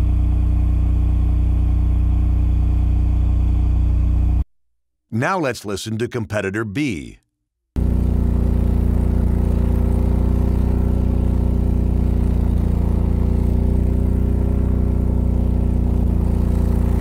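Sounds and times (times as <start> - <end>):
generator engine humming: 7.8 - 17.0.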